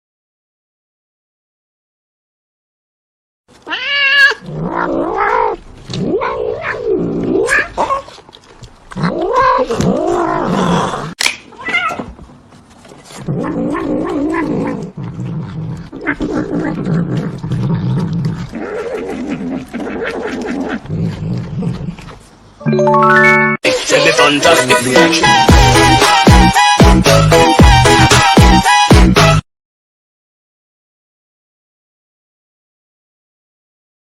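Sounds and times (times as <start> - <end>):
cat yowling: 3.6 - 6.8, 7.4 - 8.1, 11.5 - 12.1.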